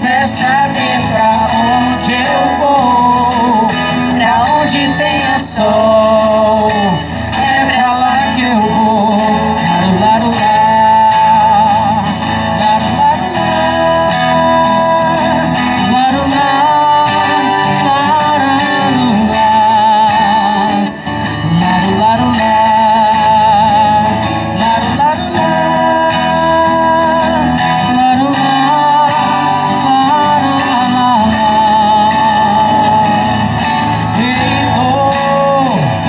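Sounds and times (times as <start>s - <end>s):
pop song with guitar: 0.0s - 36.0s
wordless singing with vibrato: 0.0s - 36.0s.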